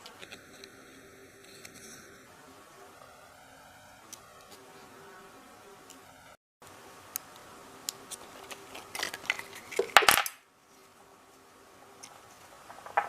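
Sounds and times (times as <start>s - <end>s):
small hard objects clattering: 8.2s - 10.4s, 12.4s - 13.0s.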